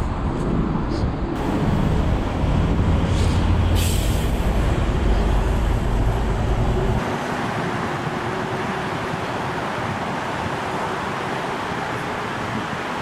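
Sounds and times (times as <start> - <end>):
heavy low rumble: 0.0 - 7.1
road traffic passing: 0.0 - 13.0.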